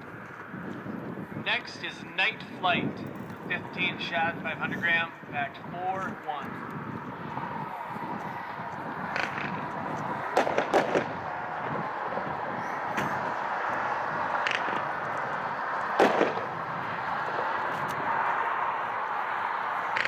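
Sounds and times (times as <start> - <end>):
fireworks sharp reports: 1.3 - 7.5, 9.0 - 12.1, 12.8 - 17.6.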